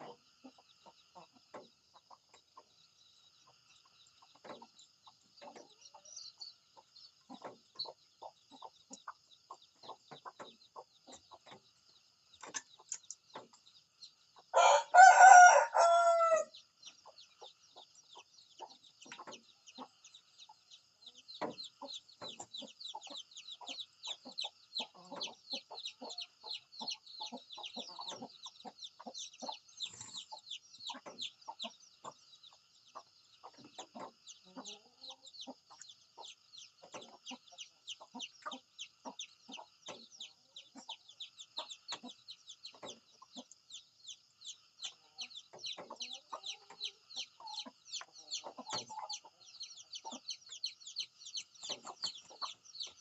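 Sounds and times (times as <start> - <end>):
chicken clucks: 0.0 - 53.0
rooster crowing: 14.5 - 16.5.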